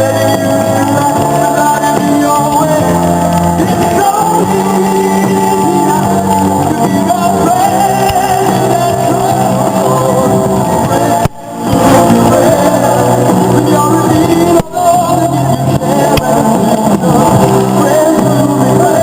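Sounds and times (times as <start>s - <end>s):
rock band playing: 0.0s - 19.0s.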